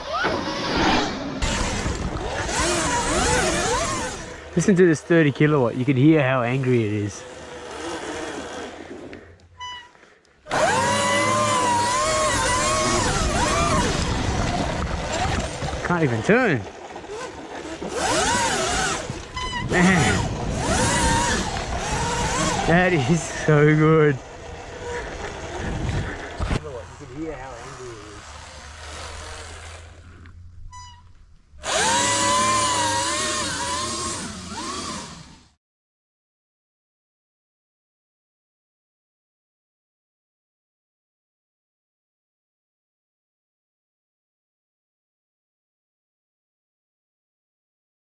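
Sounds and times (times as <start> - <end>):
electric motor whining: 0.0 - 5.5, 6.5 - 9.2, 10.5 - 30.9, 31.6 - 35.6
tyre noise: 6.4 - 35.3
rushing wind: 12.3 - 16.2, 18.0 - 27.0.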